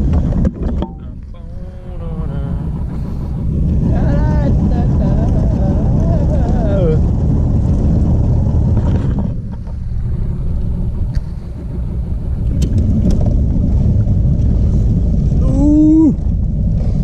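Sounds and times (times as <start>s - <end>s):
outboard motor rumbling: 0.0s - 17.0s.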